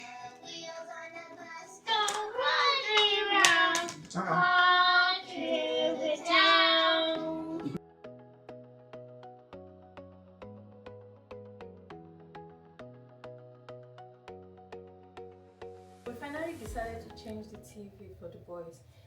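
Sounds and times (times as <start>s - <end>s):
child singing: 0.0s - 7.8s
gentle plucked instrumental music: 12.8s - 18.3s.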